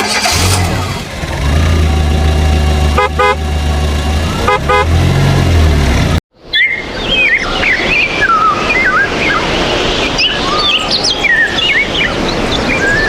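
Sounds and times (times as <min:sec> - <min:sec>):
birds chirping and singing: 0:06.4 - 0:13.0.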